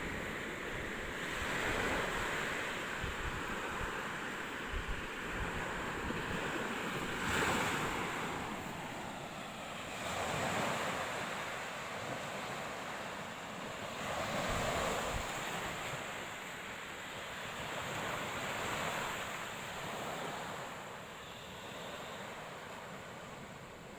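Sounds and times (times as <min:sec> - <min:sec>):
wind rumble on microphone: 0:00.0 - 0:13.0, 0:13.6 - 0:16.3
ocean waves breaking on shore: 0:00.0 - 0:23.9.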